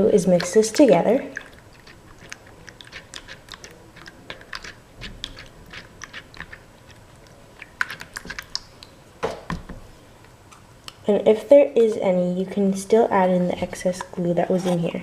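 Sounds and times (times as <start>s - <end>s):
slime stirred with sticky clicks: 0.0s - 11.0s.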